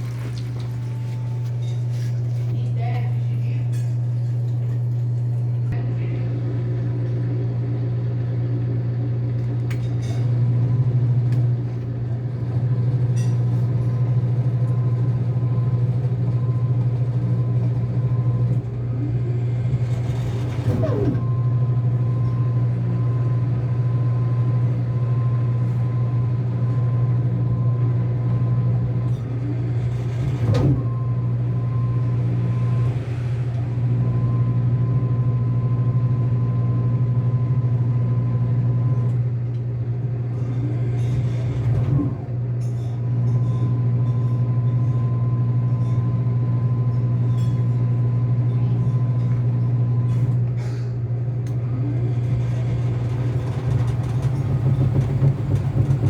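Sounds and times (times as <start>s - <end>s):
washing machine pitch-sweeping surge: 0.0s - 5.8s, 12.0s - 38.9s, 51.6s - 56.0s
washing machine motor hum: 0.0s - 56.0s.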